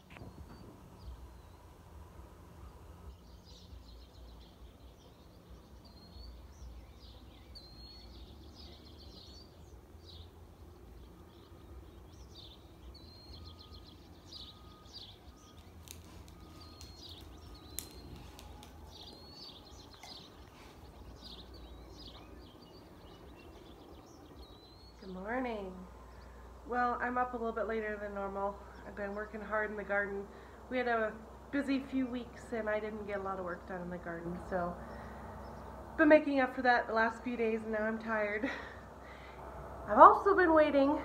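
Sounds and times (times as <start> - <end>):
birds chirping and whistling: 2.7 - 26.3
sharp clicks: 15.4 - 20.3.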